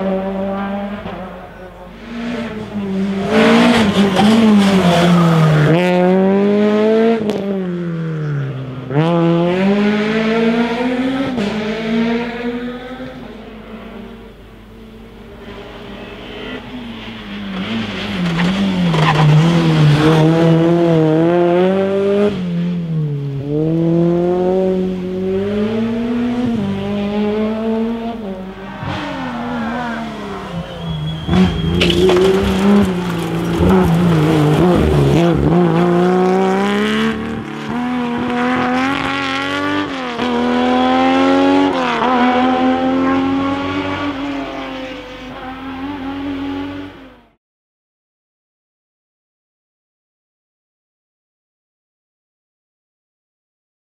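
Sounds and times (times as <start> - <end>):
rally car engine revving: 0.0 - 47.4
tyre squeal: 29.3 - 34.4.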